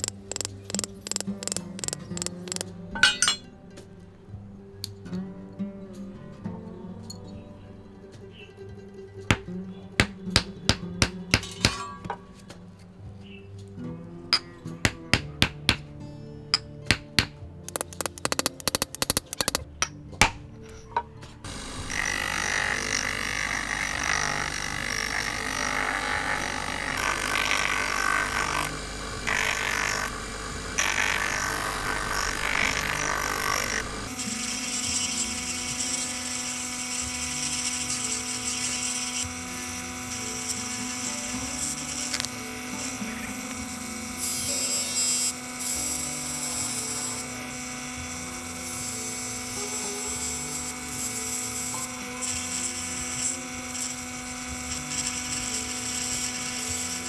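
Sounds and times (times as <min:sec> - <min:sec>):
power tool grinding knife blade: 0:00.0 - 0:03.5, 0:17.7 - 0:19.6, 0:21.4 - 0:57.0.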